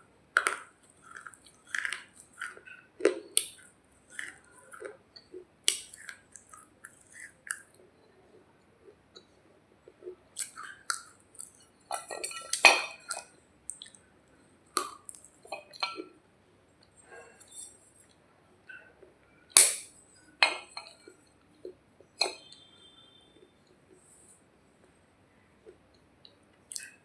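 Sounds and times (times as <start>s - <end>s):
baked clay crunching and snapping: 0.3s - 7.8s.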